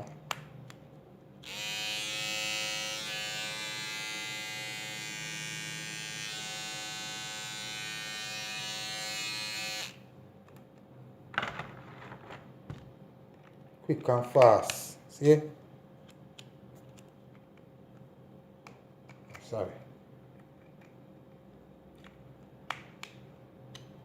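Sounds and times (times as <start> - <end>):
electric trimmer buzzing: 1.4 - 10.0.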